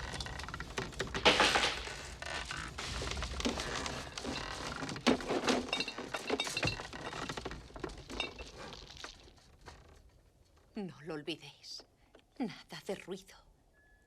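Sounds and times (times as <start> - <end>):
sharp cracks and knocks: 0.0 - 9.4.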